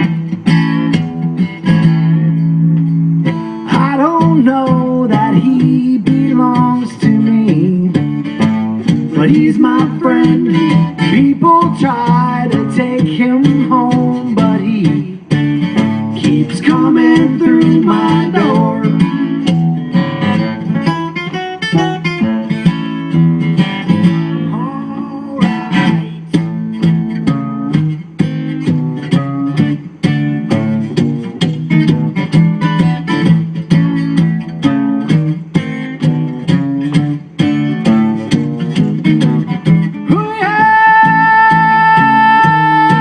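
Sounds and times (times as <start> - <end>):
acoustic guitar plucked notes: 0.0 - 43.0.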